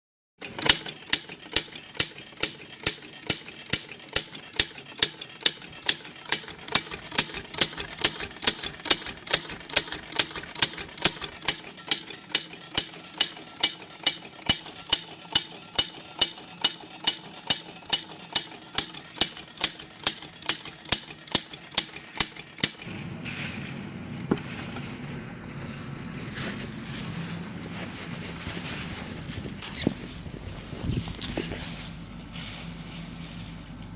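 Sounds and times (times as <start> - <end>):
water gun mechanism clicking: 0.4 - 22.9.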